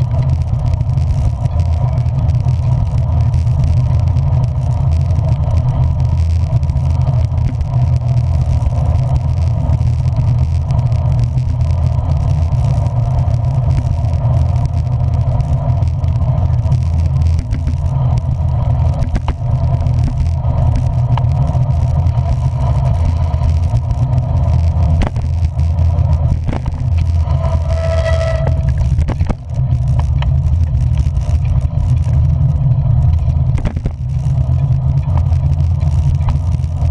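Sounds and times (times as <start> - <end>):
vehicle rumbling: 0.0 - 36.9
short high tone: 27.4 - 28.7.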